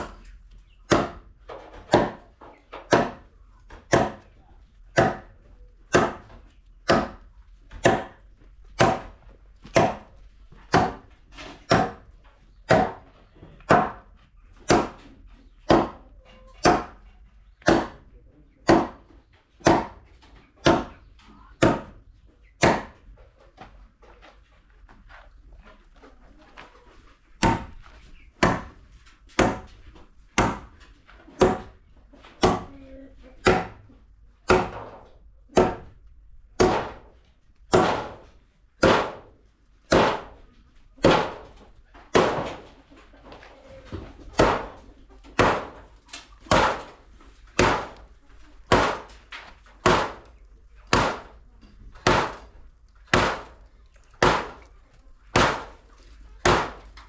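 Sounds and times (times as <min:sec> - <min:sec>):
tool striking timber: 0:00.9 - 0:04.3, 0:04.9 - 0:08.2, 0:08.8 - 0:10.1, 0:10.7 - 0:12.1, 0:12.7 - 0:13.0, 0:13.7 - 0:15.0, 0:15.6 - 0:16.0, 0:16.6 - 0:17.0, 0:17.6 - 0:18.0, 0:18.6 - 0:20.0, 0:20.6 - 0:20.9, 0:21.6 - 0:21.9, 0:22.6 - 0:23.0, 0:27.4 - 0:27.8, 0:28.4 - 0:29.7, 0:30.4 - 0:30.8, 0:31.4 - 0:31.7, 0:32.4 - 0:32.7, 0:33.4 - 0:33.8, 0:34.4 - 0:36.0, 0:36.6 - 0:37.1, 0:37.7 - 0:39.3, 0:39.9 - 0:40.4, 0:42.1 - 0:42.6, 0:45.4 - 0:45.8, 0:46.5 - 0:47.0, 0:47.6 - 0:48.0, 0:48.7 - 0:49.2, 0:49.8 - 0:50.3, 0:50.9 - 0:51.4, 0:52.0 - 0:53.6, 0:54.2 - 0:54.7, 0:55.3 - 0:55.8, 0:56.4 - 0:56.9.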